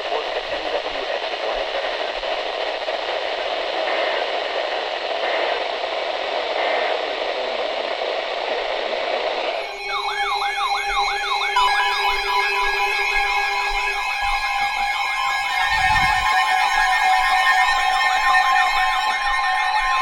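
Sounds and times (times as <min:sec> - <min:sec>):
radio hiss and static: 0:00.0 - 0:20.0
emergency alert tones: 0:09.5 - 0:16.8.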